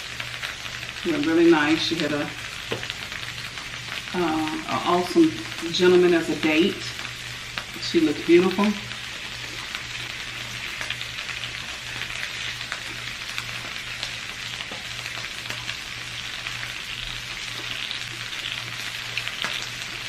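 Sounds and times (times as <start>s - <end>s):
food sizzling in a skillet: 0.0s - 20.0s
crackles and pops: 8.6s - 20.0s.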